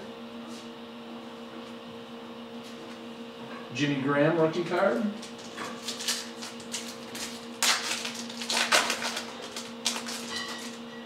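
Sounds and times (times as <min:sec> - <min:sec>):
steady low hum: 0:00.0 - 0:11.0
cards rustling: 0:05.3 - 0:10.8.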